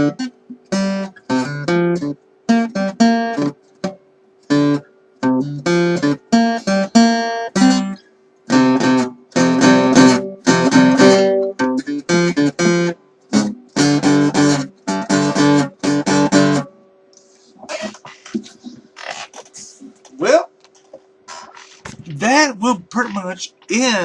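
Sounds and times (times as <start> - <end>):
guitar chords strummed: 0.0 - 16.8.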